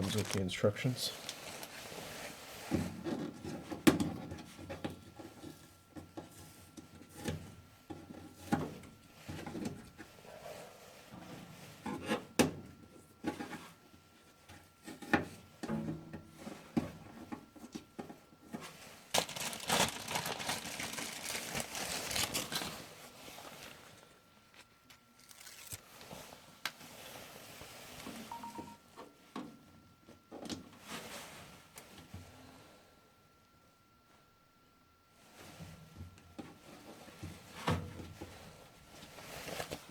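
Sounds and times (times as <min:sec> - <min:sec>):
rustling and rubbing: 0:00.0 - 0:00.5, 0:38.9 - 0:39.9.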